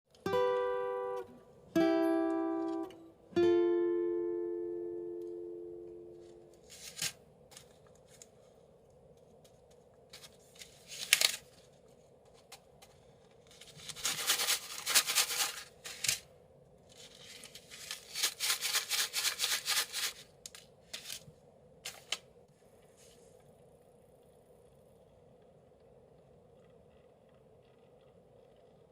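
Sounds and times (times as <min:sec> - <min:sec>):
plastic packet crinkling: 0:10.2 - 0:11.7, 0:13.5 - 0:16.2, 0:16.9 - 0:21.2.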